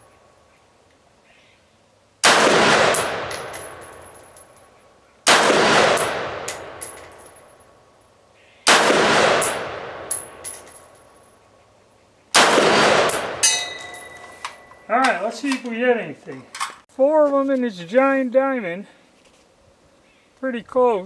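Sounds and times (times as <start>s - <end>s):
rifle shots echoing: 2.2s - 4.4s, 5.3s - 7.6s, 8.7s - 11.0s, 12.4s - 14.6s.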